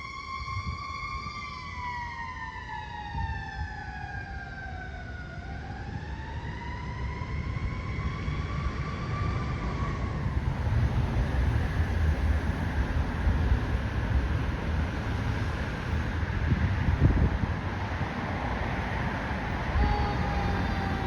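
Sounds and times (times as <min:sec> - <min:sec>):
fire engine siren wailing: 0:00.0 - 0:12.3, 0:19.2 - 0:21.0.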